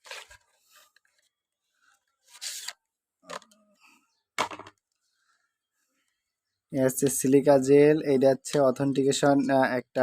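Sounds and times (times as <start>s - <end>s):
packaging rustling and scraping: 0.0s - 3.6s.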